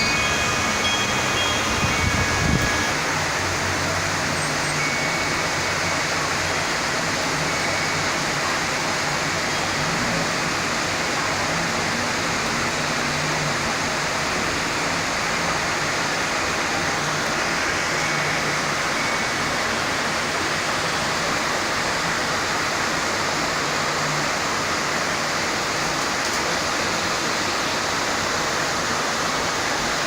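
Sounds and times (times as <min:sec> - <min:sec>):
heavy rain pouring: 0:00.0 - 0:30.0.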